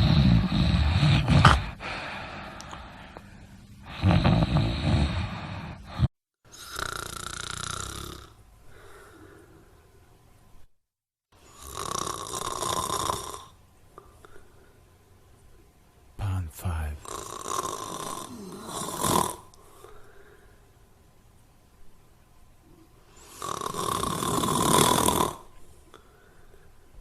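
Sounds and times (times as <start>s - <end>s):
person snoring: 0.0s - 2.4s, 3.8s - 8.4s, 11.5s - 13.5s, 16.2s - 19.5s, 23.3s - 25.5s.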